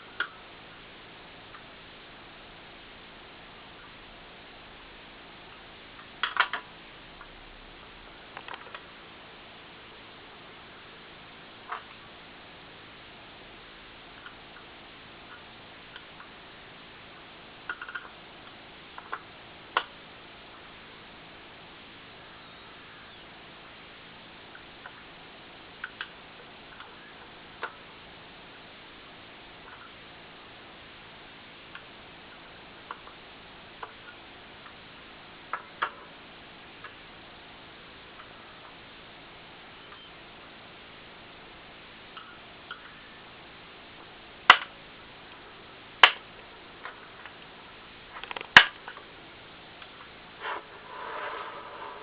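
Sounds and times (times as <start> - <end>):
steady hiss: 0.0 - 52.0
sharp clicks of small parts: 48.2 - 49.0.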